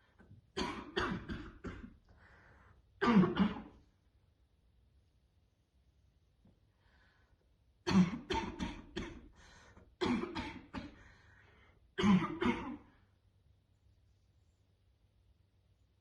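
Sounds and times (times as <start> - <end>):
woman coughing: 0.6 - 2.0, 3.0 - 3.8, 7.9 - 9.3, 10.0 - 11.0, 12.0 - 12.9.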